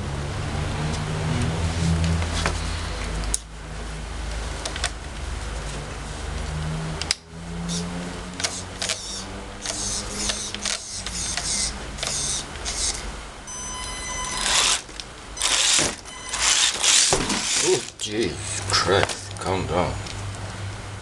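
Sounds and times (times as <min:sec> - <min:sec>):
motor whine: 0:07.5 - 0:18.8
electric motor whirring in bursts: 0:07.6 - 0:18.8.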